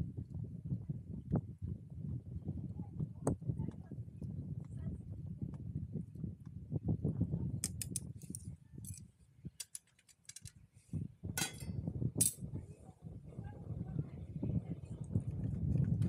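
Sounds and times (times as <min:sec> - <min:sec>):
sharp clicks and clinks: 0:07.6 - 0:09.0, 0:09.6 - 0:10.6, 0:11.4 - 0:12.4.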